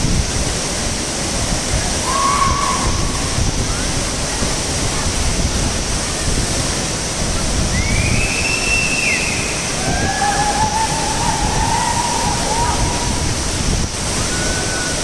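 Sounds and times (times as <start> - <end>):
waterfall rushing: 0.0 - 15.0
faint high calls: 2.0 - 3.1.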